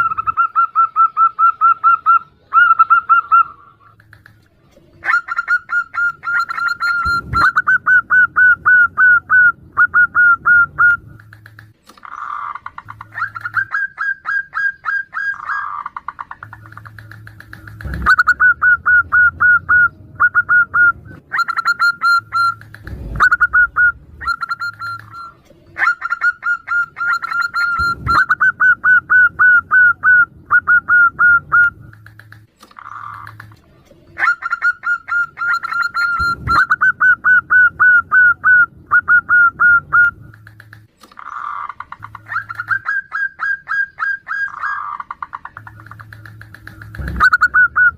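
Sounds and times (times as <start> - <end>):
doves calling: 0.0 - 47.9
sharp clicks: 4.0 - 4.5, 11.2 - 13.7, 16.1 - 18.4, 22.4 - 23.4, 31.9 - 33.7, 40.3 - 42.7, 45.1 - 47.5.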